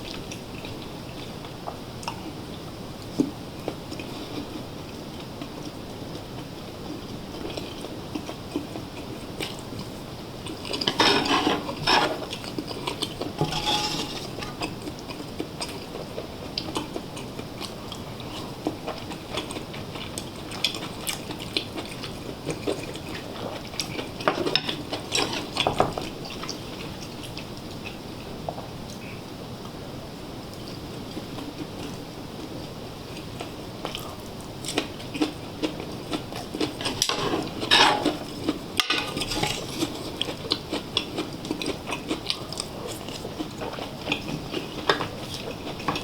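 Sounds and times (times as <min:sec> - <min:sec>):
cutlery clinking against dishes: 0:10.7 - 0:12.4, 0:13.4 - 0:14.4, 0:36.8 - 0:38.2, 0:38.8 - 0:39.6
cutlery clattering: 0:10.8 - 0:12.3, 0:13.4 - 0:14.4, 0:36.9 - 0:38.2.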